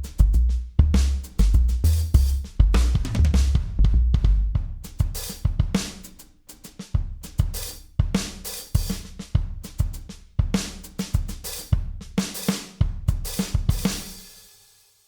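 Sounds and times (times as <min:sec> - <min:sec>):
bass line: 0:00.0 - 0:04.6
looped drum kit beat: 0:00.0 - 0:14.6.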